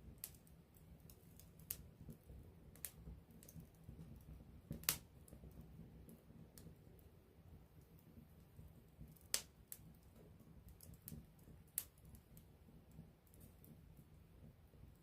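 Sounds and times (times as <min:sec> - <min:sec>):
campfire burning and crackling: 0:00.0 - 0:15.0
sharp fire pops: 0:04.7 - 0:05.4, 0:09.2 - 0:09.8.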